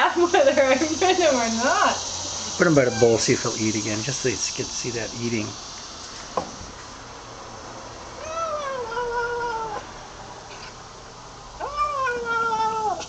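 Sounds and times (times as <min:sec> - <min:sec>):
kitten meowing: 0:02.5 - 0:03.5, 0:08.2 - 0:09.8, 0:11.6 - 0:13.0.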